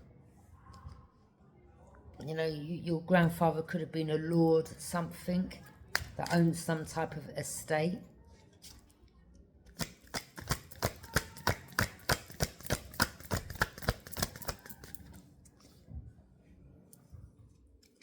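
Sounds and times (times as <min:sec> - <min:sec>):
cards shuffling clicks: 0:09.7 - 0:15.2.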